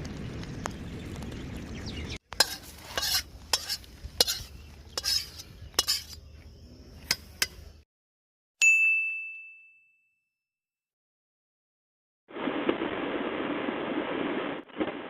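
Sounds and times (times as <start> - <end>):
metal spatula scraping a pan: 2.3 - 6.2, 7.0 - 7.6
prawns sizzling in hot oil: 2.3 - 6.2.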